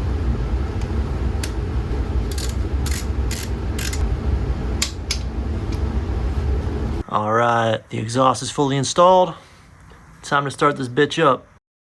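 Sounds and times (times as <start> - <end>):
steady low rumble: 0.0 - 7.1
ratchet wrench clicking: 2.3 - 4.0.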